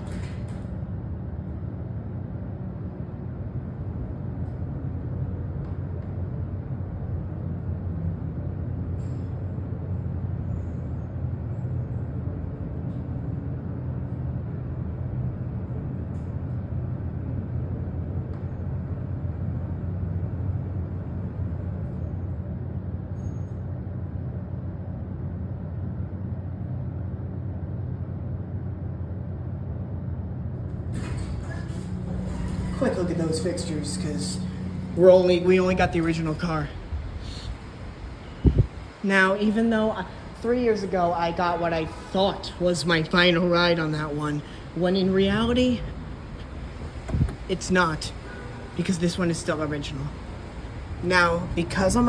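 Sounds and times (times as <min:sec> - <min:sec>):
elevator hum: 0:00.0 - 0:52.0.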